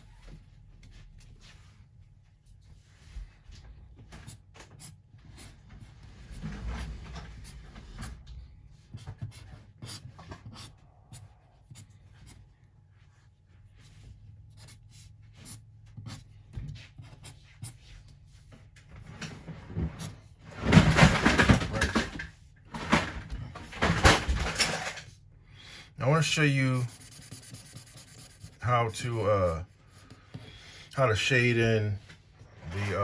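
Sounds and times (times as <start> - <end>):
drawing tool scratching on paper: 4.2 - 12.5, 13.1 - 18.6, 26.0 - 31.9.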